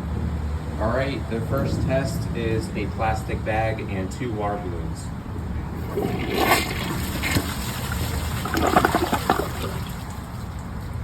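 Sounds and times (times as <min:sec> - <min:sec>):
toilet flushing: 0:05.6 - 0:10.7.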